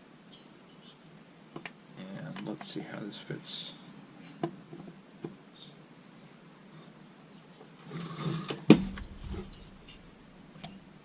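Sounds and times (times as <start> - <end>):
metal scrape: 7.4 - 10.8
faint handling: 8.8 - 10.2.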